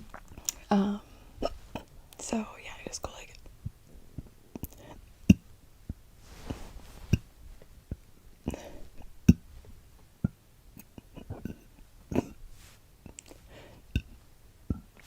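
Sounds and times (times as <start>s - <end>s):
breathy inhales: 13.5s - 13.9s.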